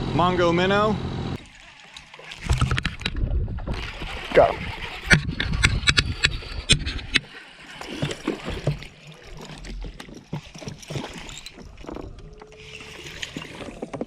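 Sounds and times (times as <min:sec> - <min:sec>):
water sounds: 0:01.3 - 0:14.0
sharp clicks and knocks: 0:04.8 - 0:07.3.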